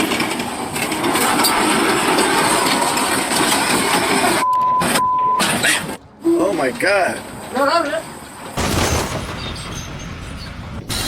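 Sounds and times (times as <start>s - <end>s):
construction machinery noise: 0.0s - 11.0s
short electronic beeps: 4.4s - 5.5s.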